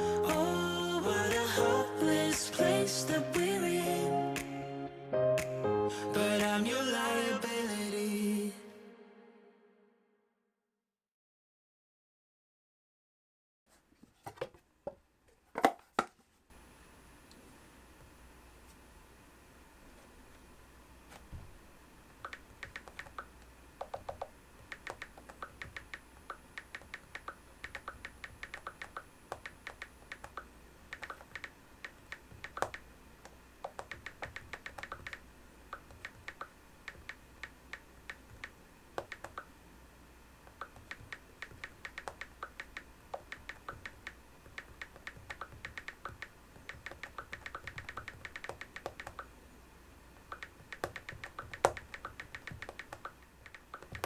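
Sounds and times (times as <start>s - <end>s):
keyboard keystroke clicks: 22.2s - 39.5s, 40.4s - 49.3s, 50.2s - 54.0s.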